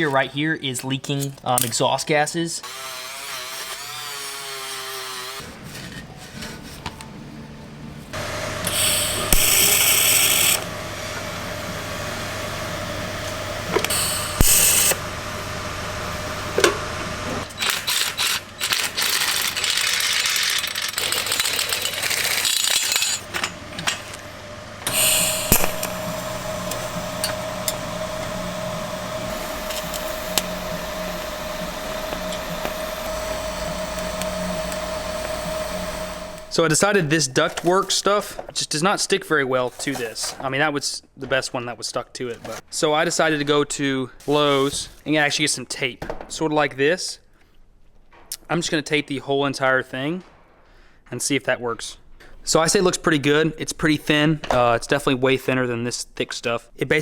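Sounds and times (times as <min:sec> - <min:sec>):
power tool on metal: 0:02.6 - 0:05.5, 0:08.2 - 0:36.6.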